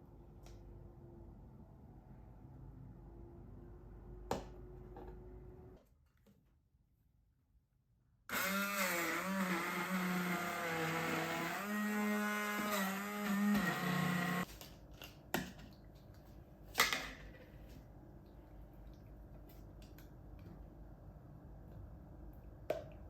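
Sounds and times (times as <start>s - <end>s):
blender motor running: 8.3s - 14.4s.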